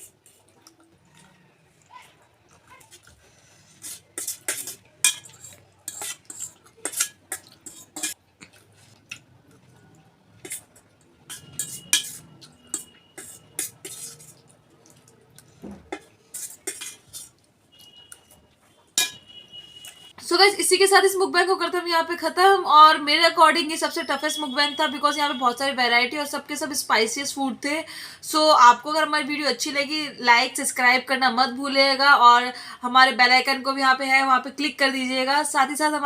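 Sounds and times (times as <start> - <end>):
cutlery clinking on a plate: 4.2 - 8.2, 10.4 - 14.4, 19.0 - 19.4.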